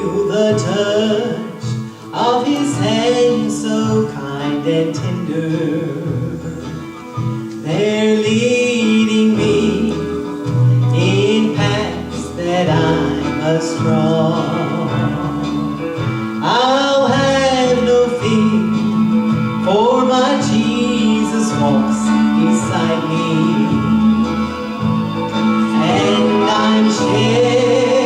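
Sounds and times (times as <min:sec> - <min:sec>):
instrumental accompaniment: 0:00.0 - 0:28.0
man singing gospel song: 0:00.0 - 0:28.0.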